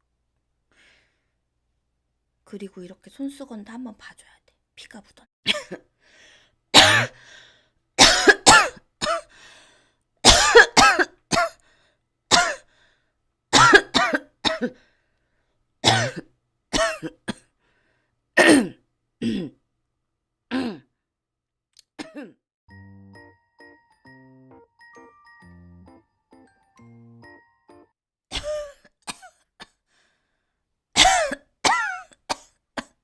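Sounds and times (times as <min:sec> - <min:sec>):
woman coughing: 0:05.5 - 0:05.8, 0:06.8 - 0:07.2, 0:08.0 - 0:09.3, 0:10.2 - 0:11.6, 0:12.3 - 0:12.6, 0:13.6 - 0:14.8, 0:15.8 - 0:17.5, 0:18.4 - 0:19.6, 0:22.0 - 0:22.4, 0:28.3 - 0:29.8, 0:31.0 - 0:33.0.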